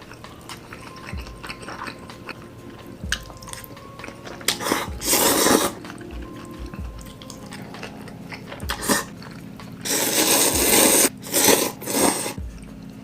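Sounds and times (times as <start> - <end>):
faint steady hum: 0.0 - 13.0
person slurping noodles: 4.2 - 6.0, 7.8 - 12.4.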